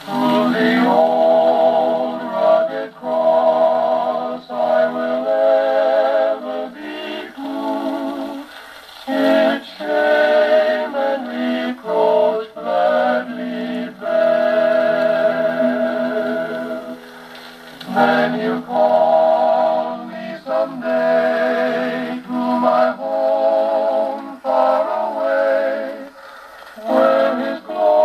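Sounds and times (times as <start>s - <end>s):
gramophone playing a hymn: 0.0s - 28.0s.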